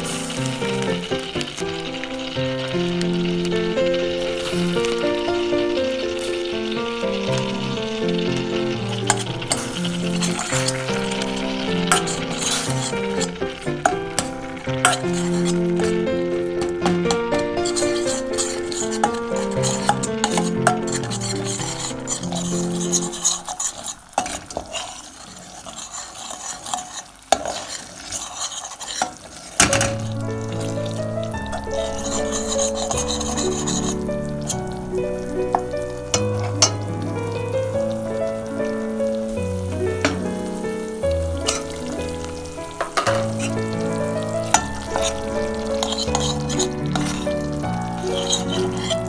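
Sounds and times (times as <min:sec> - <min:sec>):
music: 0:00.0 - 0:23.3, 0:29.6 - 0:49.0
food sizzling: 0:00.0 - 0:49.0
utensil scraping food in pan: 0:00.0 - 0:49.0
utensil knocking against pan: 0:08.4 - 0:22.5, 0:40.0 - 0:40.3, 0:42.8 - 0:43.8.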